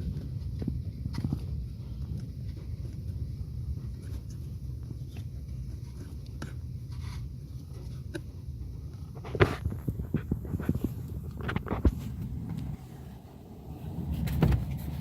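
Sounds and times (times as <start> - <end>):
hands rubbing and scraping trim: 0.0 - 15.0
low rumble: 9.7 - 15.0.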